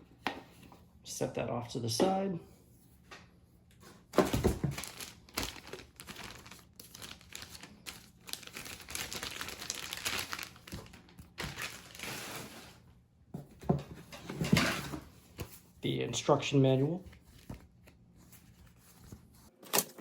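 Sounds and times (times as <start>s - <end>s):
packing material crinkling: 4.1s - 12.8s.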